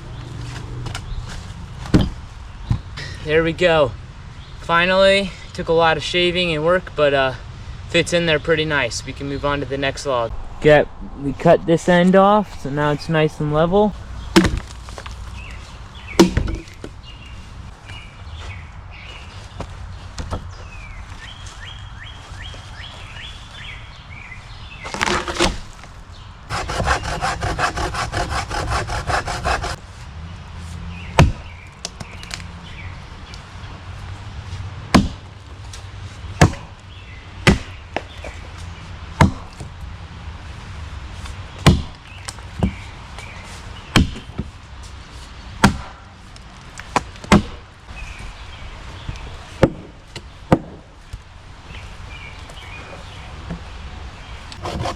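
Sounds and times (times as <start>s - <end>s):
axe chopping wood: 14.3s - 14.8s, 16.2s - 16.9s, 24.9s - 25.7s, 31.2s - 32.1s, 34.9s - 35.3s, 36.4s - 36.8s, 37.4s - 38.1s, 39.2s - 39.6s, 41.6s - 42.0s, 43.9s - 44.5s, 45.6s - 46.0s, 47.0s - 47.6s, 49.6s - 50.8s
hand saw sawing wood: 26.5s - 29.8s, 54.6s - 54.9s.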